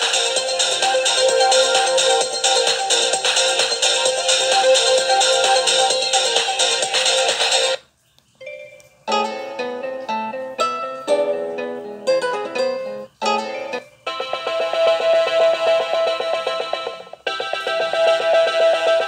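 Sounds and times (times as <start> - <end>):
pulsing chiming ringtone: 0.0 - 7.8
plucked guitar-like ringtone: 8.4 - 19.0.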